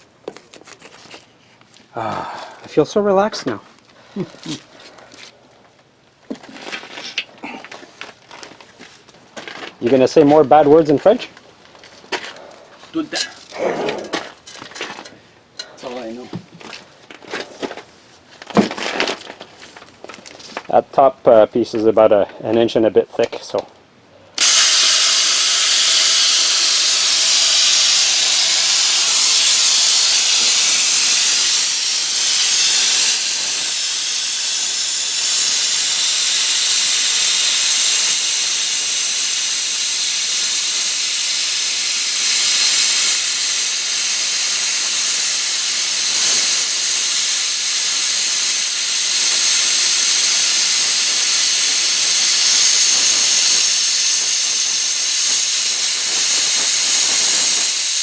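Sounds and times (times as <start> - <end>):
plasma cutter hissing: 24.4 - 58.0.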